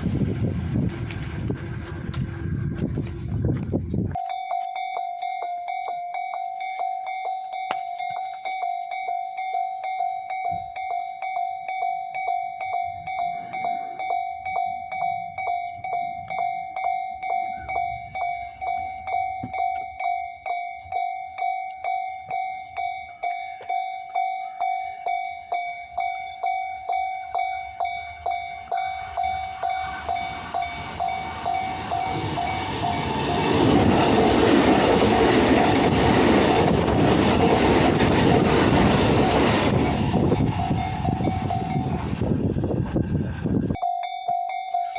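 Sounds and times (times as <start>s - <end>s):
train rumble and wheel noise: 0.0s - 44.9s
level crossing warning bell: 4.1s - 42.3s, 43.6s - 44.9s.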